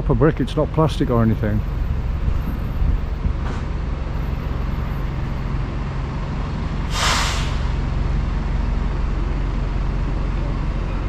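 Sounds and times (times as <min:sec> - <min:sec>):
low engine hum: 0:00.0 - 0:11.0
loud air hiss: 0:06.9 - 0:07.9.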